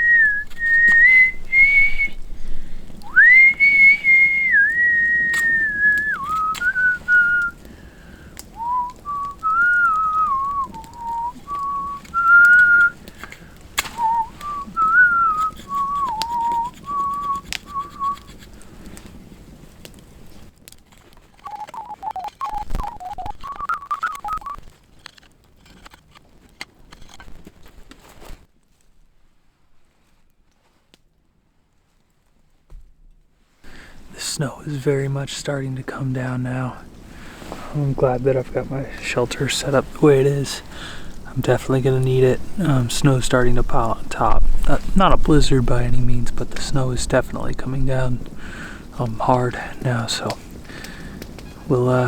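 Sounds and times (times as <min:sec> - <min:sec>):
man whistling a tune: 0:00.0 - 0:02.2, 0:03.0 - 0:07.6, 0:08.5 - 0:13.0, 0:13.9 - 0:18.3, 0:21.4 - 0:24.6
sharp clicks and taps: 0:21.4 - 0:25.2.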